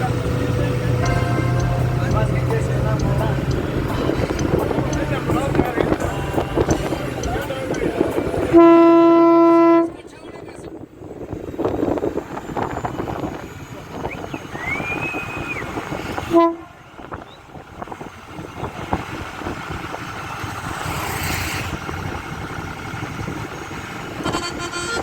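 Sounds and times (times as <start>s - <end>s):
vehicle rumble in traffic: 0.0s - 25.0s
short horn toot: 24.2s - 25.0s.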